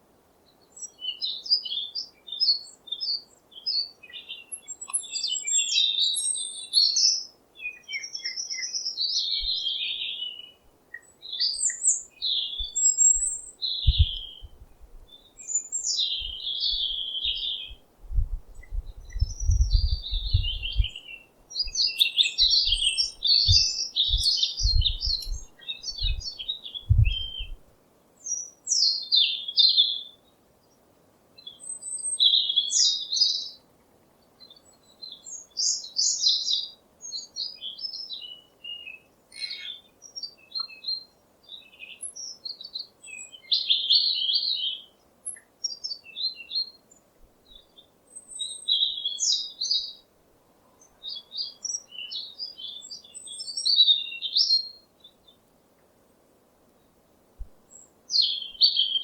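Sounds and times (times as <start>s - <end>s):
small birds twittering: 0.5s - 27.6s, 31.4s - 33.6s, 34.3s - 50.1s, 50.7s - 55.5s, 56.8s - 59.0s
low thumps: 13.9s - 15.0s, 18.0s - 21.0s, 23.4s - 25.4s, 26.9s - 27.6s.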